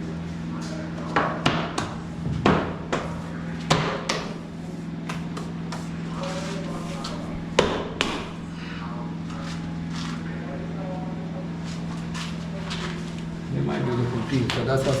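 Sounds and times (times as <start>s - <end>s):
low steady hum: 0.0s - 15.0s
hammer knocking on wood: 1.2s - 4.4s, 7.6s - 8.3s.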